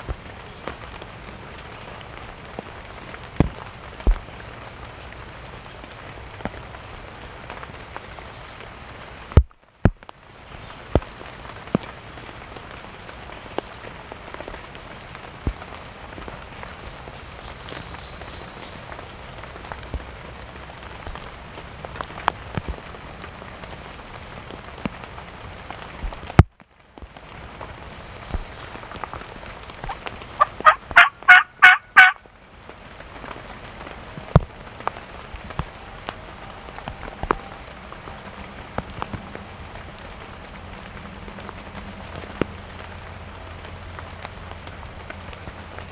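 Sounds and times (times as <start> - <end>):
rain hiss: 0.0 - 45.9
raindrops ticking: 0.0 - 45.9
turkey gobbling: 29.8 - 32.2.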